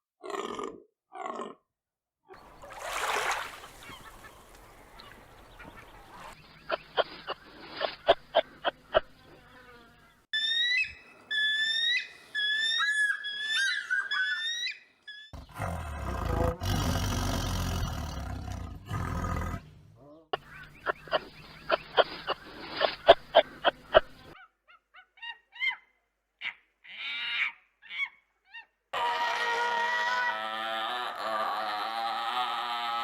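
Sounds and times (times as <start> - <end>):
low rough roar: 15.4 - 19.8.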